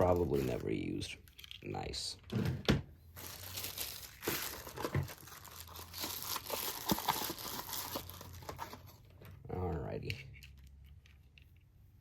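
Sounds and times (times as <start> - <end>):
packaging crinkling: 3.2 - 9.0.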